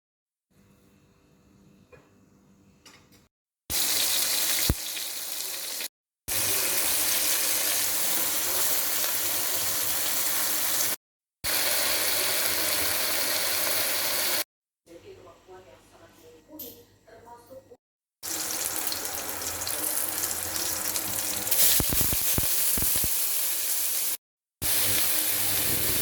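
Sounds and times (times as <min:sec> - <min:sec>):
water running from a tap: 0:03.7 - 0:14.4, 0:18.2 - 0:26.0.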